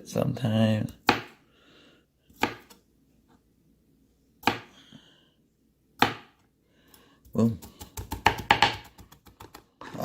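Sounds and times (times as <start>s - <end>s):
knife chopping on cutting board: 1.0s - 1.4s, 2.3s - 2.8s, 4.4s - 4.7s, 6.0s - 6.4s, 7.2s - 10.0s.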